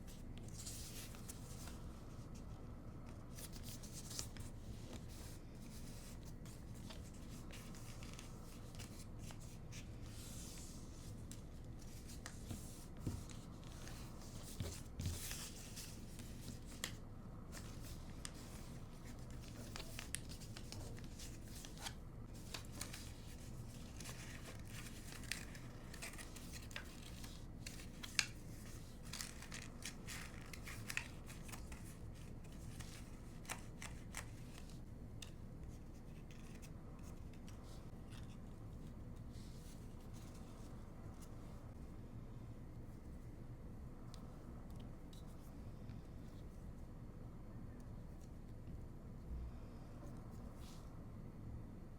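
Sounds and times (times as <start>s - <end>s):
paper rustling and crinkling: 0.0s - 2.6s, 3.2s - 41.4s
paper creases crackling: 12.3s - 34.8s.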